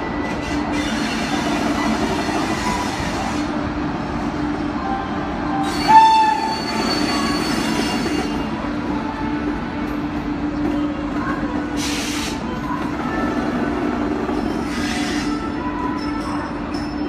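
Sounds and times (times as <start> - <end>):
train running noise and hum: 0.0 - 17.0
train horn blast: 5.6 - 8.4.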